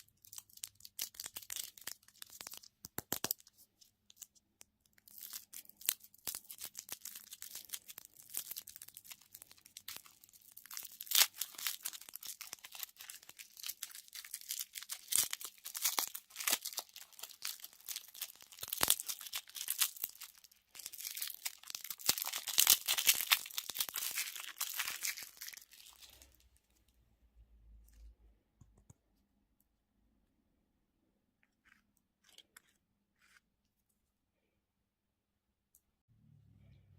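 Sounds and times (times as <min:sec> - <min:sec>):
candy wrappers crinkling: 0:00.0 - 0:26.6.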